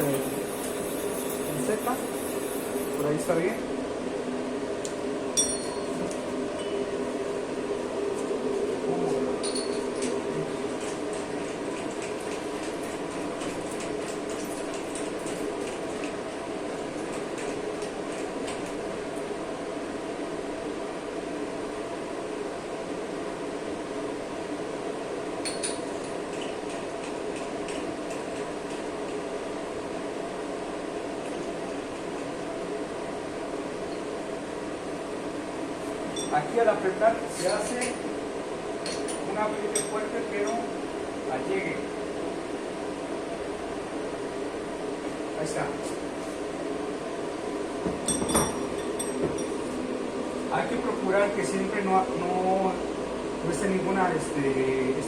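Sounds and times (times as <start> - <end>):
ringing metallic clinks: 0.0 - 3.2, 5.4 - 6.0, 9.4 - 9.9
lathe hum: 0.0 - 24.0
steady machine hum: 0.0 - 55.0.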